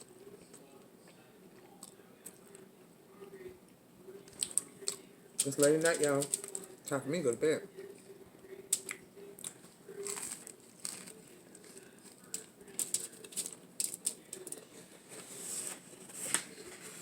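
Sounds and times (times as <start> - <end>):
soft clicks and crinkles: 8.7 - 17.0.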